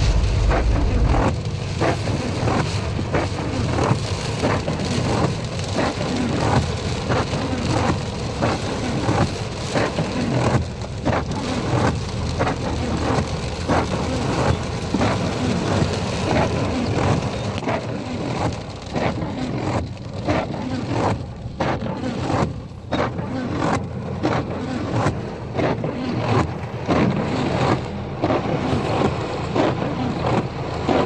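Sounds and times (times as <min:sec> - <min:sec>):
steady low rumble: 0:00.0 - 0:05.3
heavy rain falling: 0:00.0 - 0:31.0.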